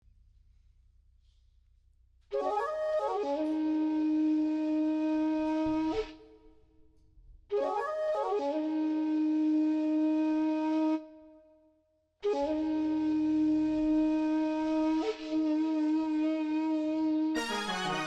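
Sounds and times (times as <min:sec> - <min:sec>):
flute-like wind tone: 0:02.4 - 0:06.4, 0:07.5 - 0:11.4, 0:12.2 - 0:18.0.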